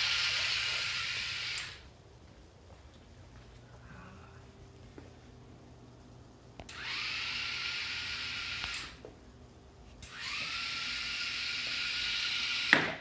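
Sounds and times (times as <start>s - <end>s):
small electric motors whirring: 0.0s - 1.8s, 6.7s - 9.0s, 10.0s - 12.8s.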